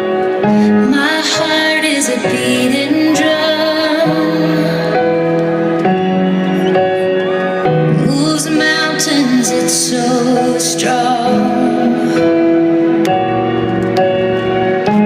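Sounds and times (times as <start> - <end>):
woman singing: 0.6 - 5.1, 7.9 - 12.4.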